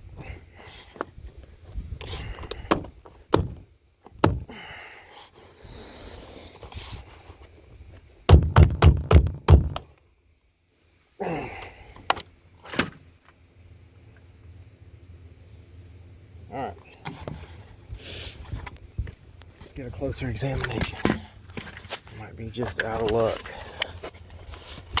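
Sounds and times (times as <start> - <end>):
roof rack parts knocked by hand: 2.6 - 4.5, 8.3 - 9.8.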